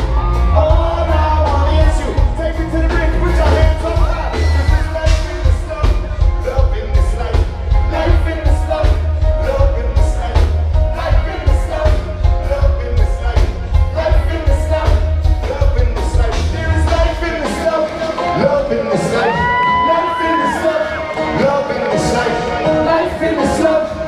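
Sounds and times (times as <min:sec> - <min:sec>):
steady drumbeat: 0:00.0 - 0:18.2
heavy bass: 0:00.0 - 0:19.6
guitar: 0:00.0 - 0:24.0.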